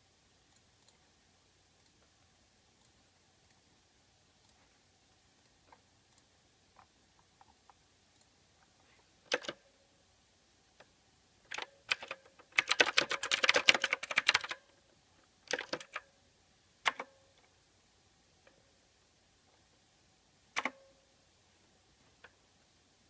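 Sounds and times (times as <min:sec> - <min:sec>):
mechanical keyboard typing: 0:09.3 - 0:09.6, 0:11.5 - 0:14.7, 0:15.4 - 0:16.1, 0:16.8 - 0:17.2, 0:20.6 - 0:20.9.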